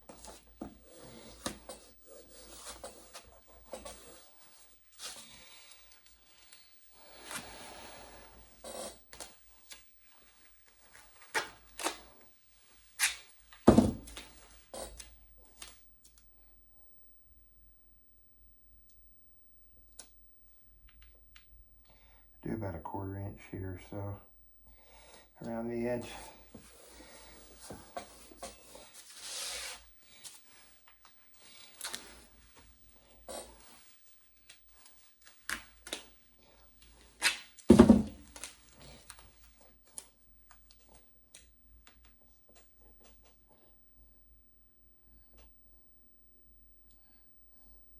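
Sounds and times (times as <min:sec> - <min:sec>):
rustling and rubbing: 0:26.6 - 0:29.8
duct tape pulled off roll: 0:37.1 - 0:37.6.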